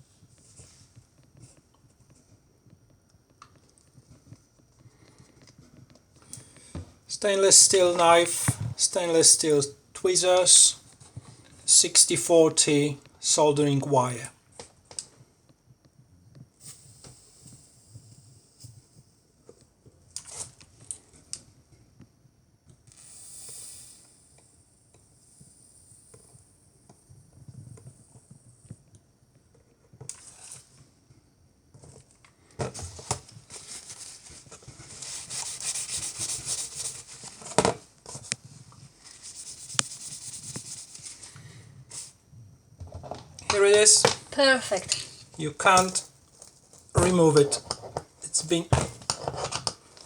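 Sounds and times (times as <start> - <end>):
flux sizzling under soldering iron: 22.8 - 24.5, 43.4 - 46.0.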